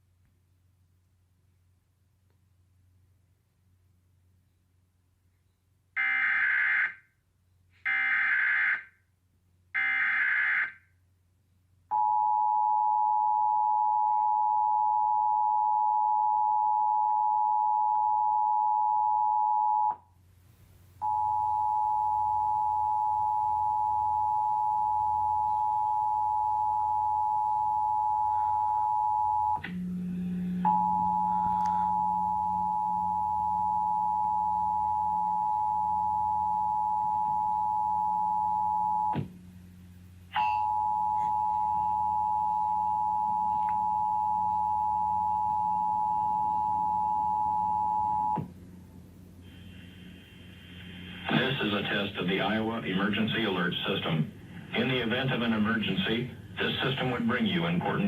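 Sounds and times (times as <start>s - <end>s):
low hum: 11.2s - 58.0s
two-tone alert signal: 28.4s - 35.6s.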